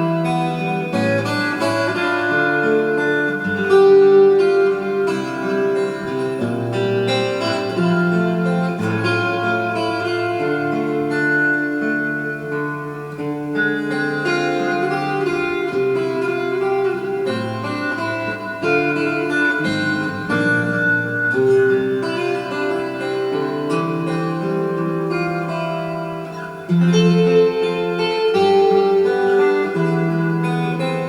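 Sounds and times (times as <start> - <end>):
plucked string music: 0.0 - 31.0.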